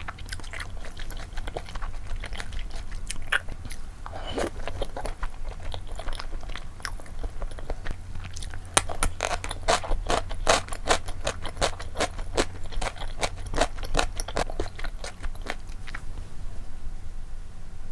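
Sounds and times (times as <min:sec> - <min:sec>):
close chewing mouth sounds: 0:00.0 - 0:16.2.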